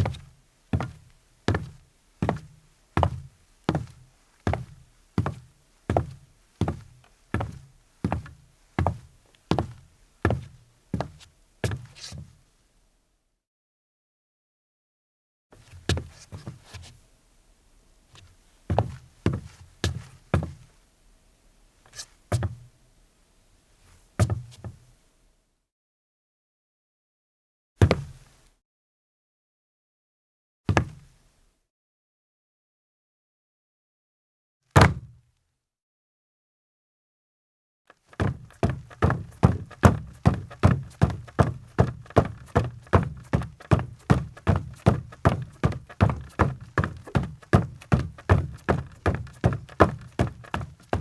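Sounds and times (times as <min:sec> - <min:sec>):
footsteps on a deck: 0:00.0 - 0:12.2, 0:18.1 - 0:20.6, 0:38.1 - 0:51.0
shoe scuff: 0:38.1 - 0:51.0.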